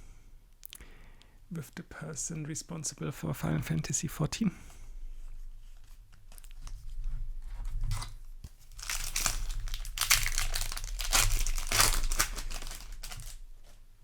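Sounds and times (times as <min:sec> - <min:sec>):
pack wrapper crinkling and tearing: 0:07.9 - 0:13.5.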